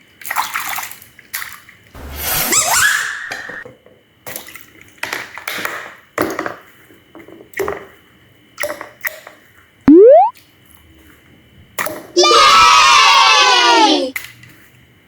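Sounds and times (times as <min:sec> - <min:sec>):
rising whistle-like sound: 0:09.9 - 0:10.3.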